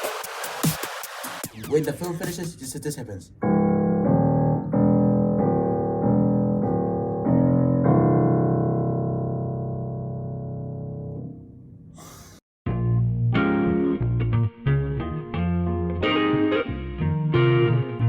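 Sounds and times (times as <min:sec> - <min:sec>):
piano chords: 0:03.3 - 0:11.9, 0:12.7 - 0:18.0.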